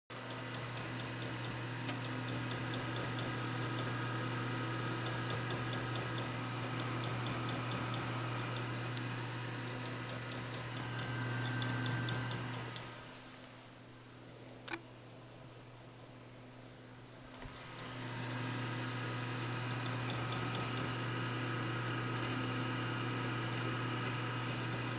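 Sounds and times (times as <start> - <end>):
hard drive sharp ticks: 0.2 - 13.6, 14.6 - 18.7, 19.6 - 21.3
hard drive spinning hum: 0.2 - 24.9
sharp click: 14.6 - 14.9.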